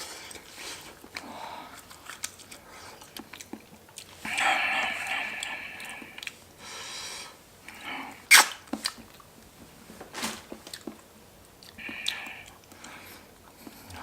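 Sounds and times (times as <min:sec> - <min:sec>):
hissy draw of breath: 0:04.2 - 0:08.2, 0:11.8 - 0:13.3
person sniffing and snorting: 0:04.2 - 0:08.5, 0:11.8 - 0:12.6.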